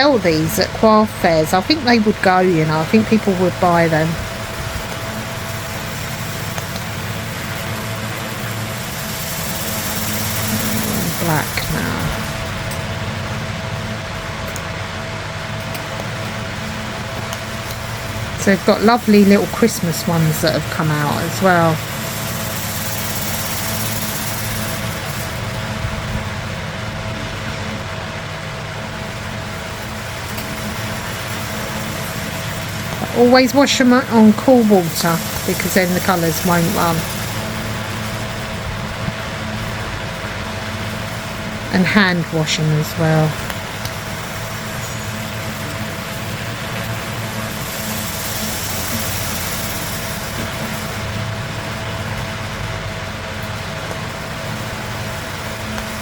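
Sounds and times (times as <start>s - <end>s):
faint whine: 0.0s - 56.0s
steady mechanical hum: 0.0s - 56.0s.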